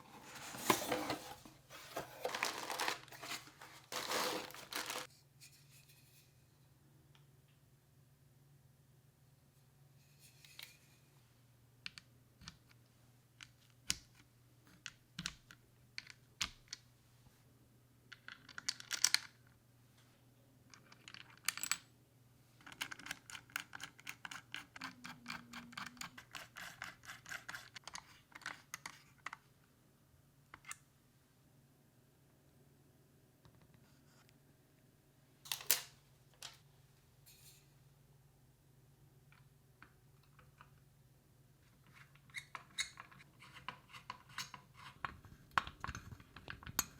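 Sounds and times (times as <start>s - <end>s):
scraping rustles: 0.0s - 5.1s.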